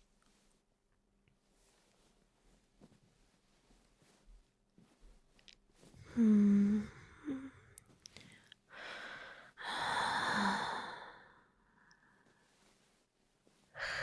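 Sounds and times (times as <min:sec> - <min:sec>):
woman humming softly: 0:06.0 - 0:08.0
breathy exhales and sigh: 0:06.0 - 0:12.0.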